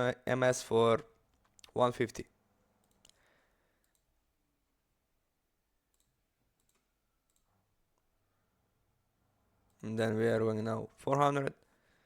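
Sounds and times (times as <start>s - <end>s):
faint computer clicks: 2.8s - 4.1s, 5.9s - 8.1s.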